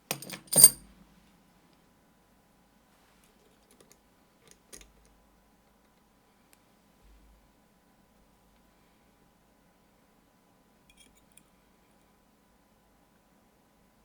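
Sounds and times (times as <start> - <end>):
lock picks clicking in a lock: 0.1 - 0.8.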